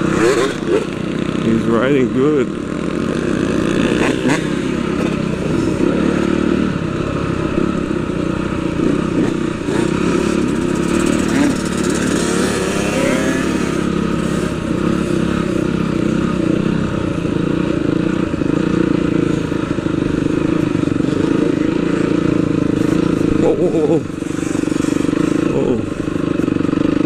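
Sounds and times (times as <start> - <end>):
dirt bike engine revving: 0.0 - 27.0.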